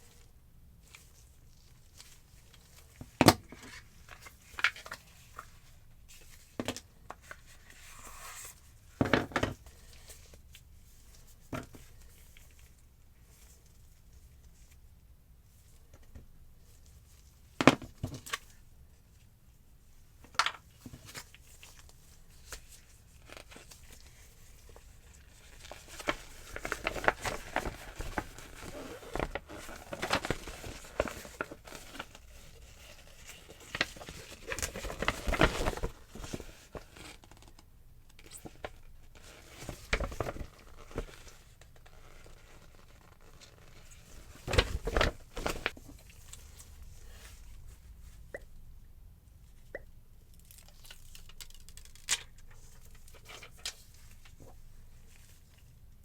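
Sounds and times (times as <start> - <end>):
packaging rustling and tearing: 22.4 - 37.4.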